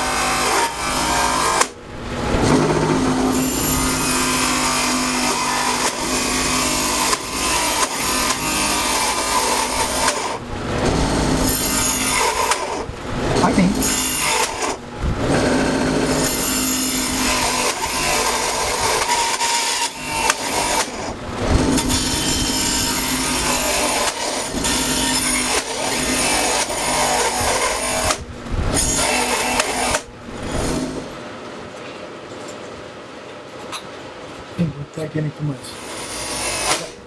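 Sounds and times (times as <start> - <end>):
power tool cutting wood: 0.0 - 31.2, 35.6 - 37.0.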